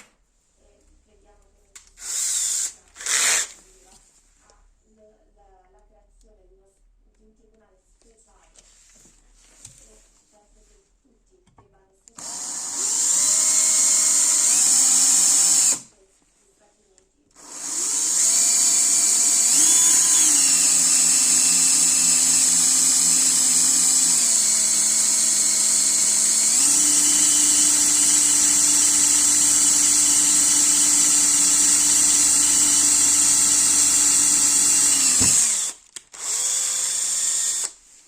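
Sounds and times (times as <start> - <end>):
electric drill running: 2.0 - 3.6, 12.2 - 15.9, 17.4 - 37.8.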